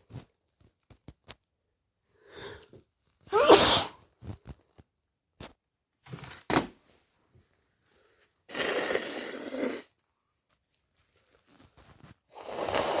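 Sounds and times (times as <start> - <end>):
person sneezing: 3.3 - 4.0.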